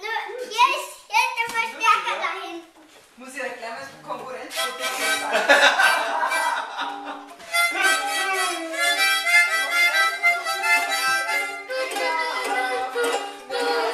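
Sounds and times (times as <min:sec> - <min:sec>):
harmonica playing chords: 0:04.5 - 0:13.9.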